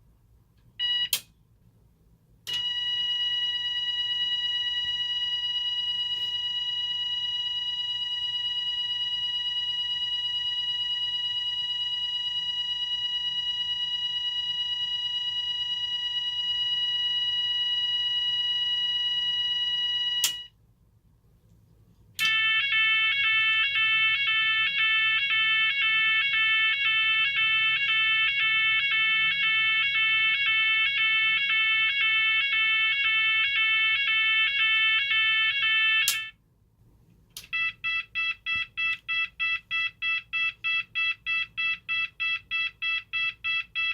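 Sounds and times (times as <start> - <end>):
alarm click: 2.5 - 2.9, 20.1 - 20.5, 22.2 - 22.6, 36.0 - 36.4
alarm steady tone: 2.5 - 20.6, 22.2 - 36.4, 37.5 - 43.9
alarm pulsing tone: 22.2 - 36.3.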